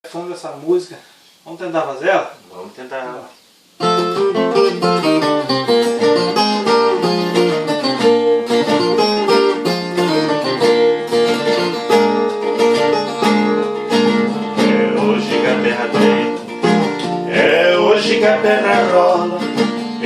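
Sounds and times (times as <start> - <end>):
plucked guitar picking notes: 3.8 - 20.0.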